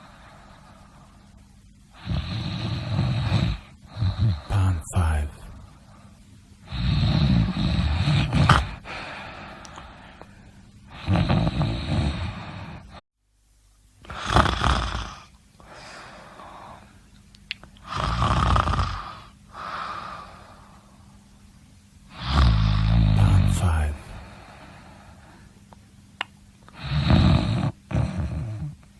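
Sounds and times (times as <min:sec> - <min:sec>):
quiet breathing: 0:00.0 - 0:13.0, 0:15.0 - 0:17.2, 0:18.9 - 0:21.4, 0:22.1 - 0:25.7
person snoring: 0:01.9 - 0:05.6, 0:06.6 - 0:10.0, 0:10.9 - 0:13.0, 0:14.0 - 0:16.9, 0:17.8 - 0:20.8, 0:22.1 - 0:25.2, 0:26.7 - 0:28.8.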